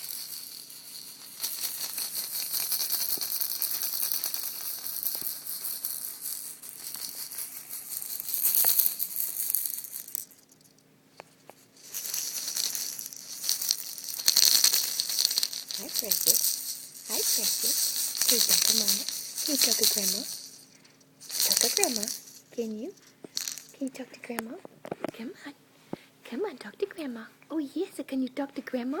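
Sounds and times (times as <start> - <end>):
fine rattling and rustling: 11.4 - 23.8.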